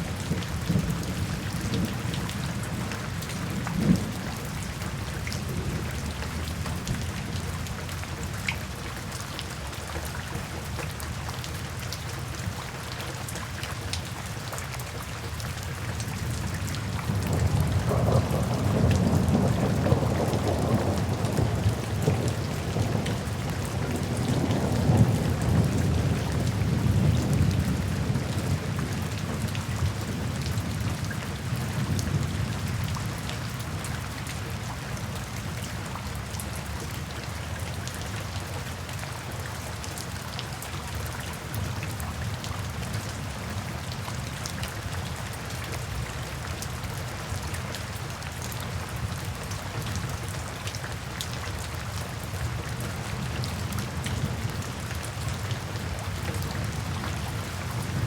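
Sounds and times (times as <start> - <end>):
low rumble of thunder: 0.0 - 8.4, 16.0 - 36.9, 52.6 - 58.0
steady rainfall: 0.0 - 58.0.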